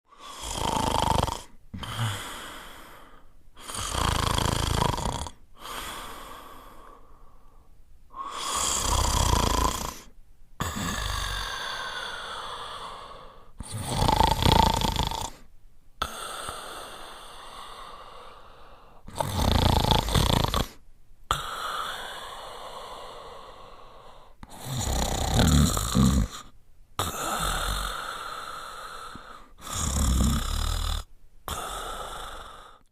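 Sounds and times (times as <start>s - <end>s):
dog snoring: 0.1s - 2.4s, 3.6s - 5.4s, 8.2s - 12.0s, 13.6s - 15.4s, 19.1s - 22.1s, 24.5s - 28.1s, 29.6s - 32.8s.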